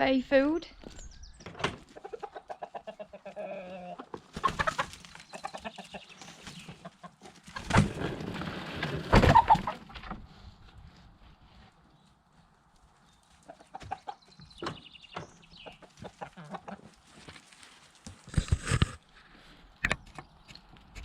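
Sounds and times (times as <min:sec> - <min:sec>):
chickens clucking: 0:01.2 - 0:08.1, 0:09.1 - 0:10.8, 0:12.1 - 0:19.0.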